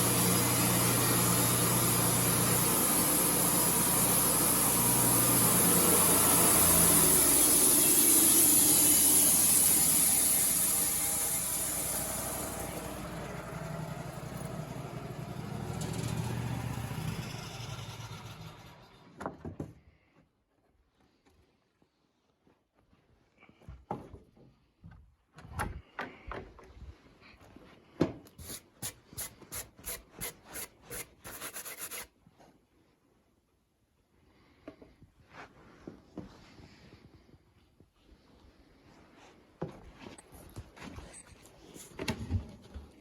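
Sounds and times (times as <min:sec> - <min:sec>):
band sawmill high hiss: 0:00.0 - 0:14.4
engine running: 0:00.0 - 0:19.0.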